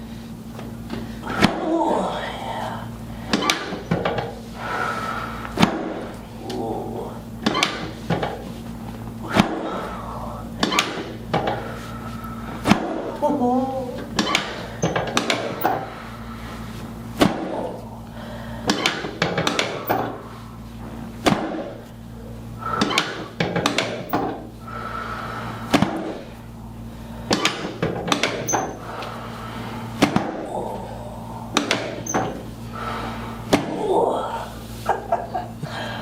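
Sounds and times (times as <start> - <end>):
spine cracking knocks: 21.2 - 21.8.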